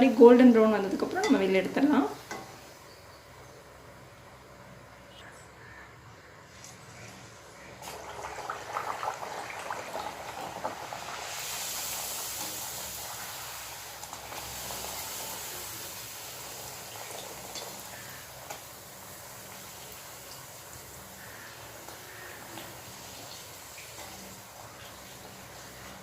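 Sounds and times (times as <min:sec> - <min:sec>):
bread sizzling in hot oil: 0:07.8 - 0:26.0.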